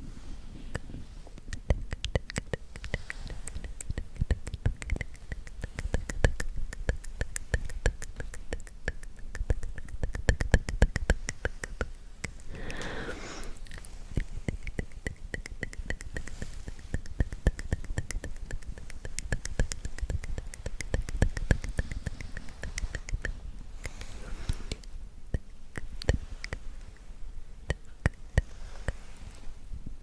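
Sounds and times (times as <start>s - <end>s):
wet mouth clicks and smacks: 0.6s - 29.5s
breathy whisper: 2.4s - 6.2s, 11.2s - 25.0s.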